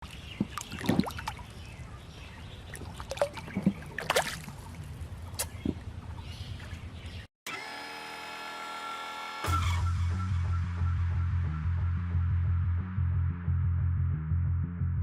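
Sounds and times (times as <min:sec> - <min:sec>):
water splashing and sloshing: 0:00.0 - 0:07.3.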